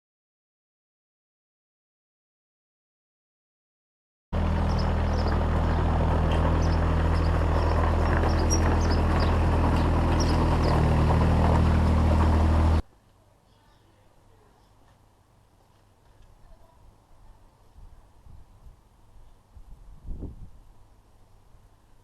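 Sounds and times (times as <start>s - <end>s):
engine running steadily: 4.4s - 12.8s.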